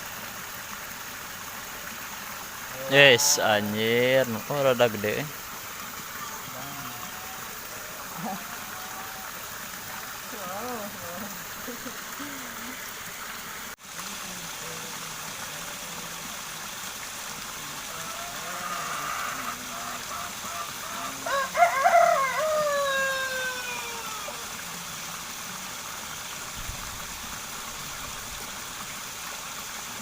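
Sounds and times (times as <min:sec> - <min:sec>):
flowing water: 0:00.0 - 0:30.0
rooster crowing: 0:17.9 - 0:24.4.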